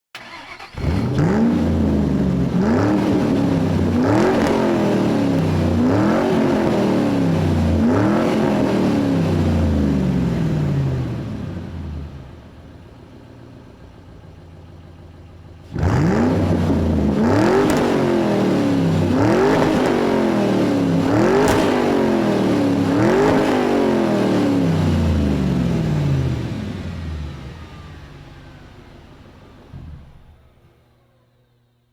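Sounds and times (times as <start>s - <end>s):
engine revving: 0.2s - 12.3s, 15.6s - 29.0s.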